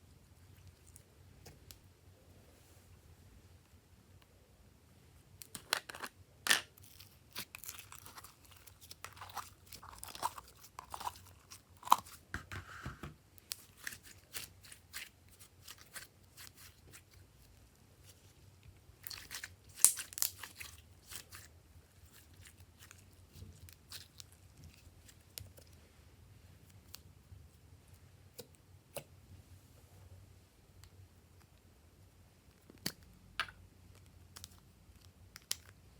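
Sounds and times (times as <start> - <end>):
slime crackling and popping: 19.0 - 21.5.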